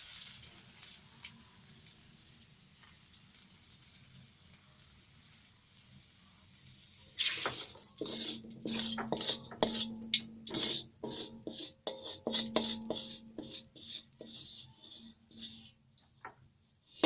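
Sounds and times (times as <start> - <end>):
utensil scraping against pan: 7.2 - 17.0.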